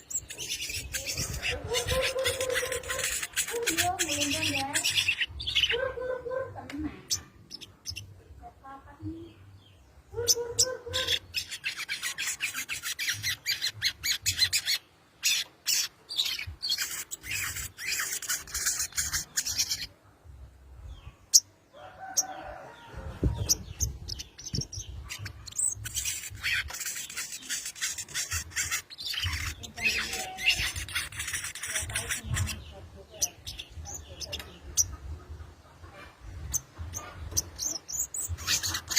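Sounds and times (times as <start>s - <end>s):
bird chattering high notes: 0.2s - 5.9s.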